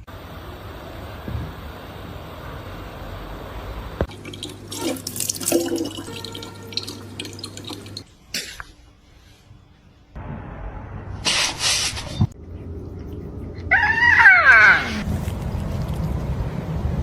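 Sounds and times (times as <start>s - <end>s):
clicks and drips: 4.0s - 8.1s
water running and splashing: 4.1s - 8.1s.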